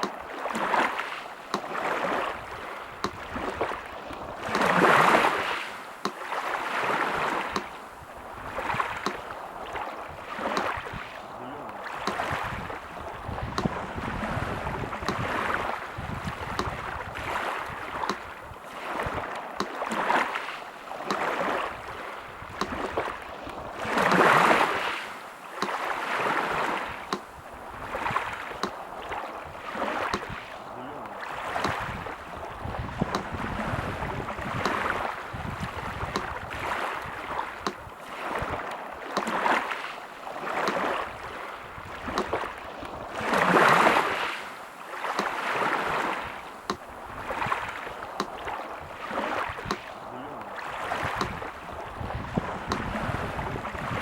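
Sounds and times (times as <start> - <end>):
sea surf washing in: 0.0 - 54.0.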